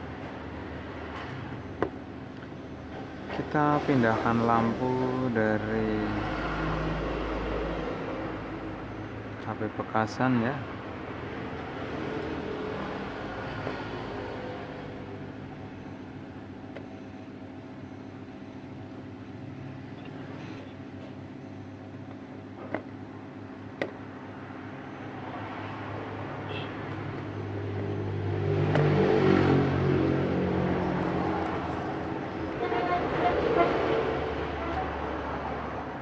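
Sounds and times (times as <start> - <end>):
steady motor hum: 0.0 - 36.0
passing motor vehicle: 3.6 - 9.4, 10.9 - 15.4, 24.0 - 36.0.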